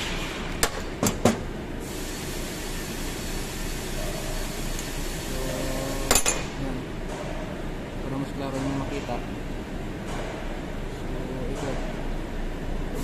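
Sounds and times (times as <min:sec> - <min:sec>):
steady background noise: 0:00.0 - 0:13.0.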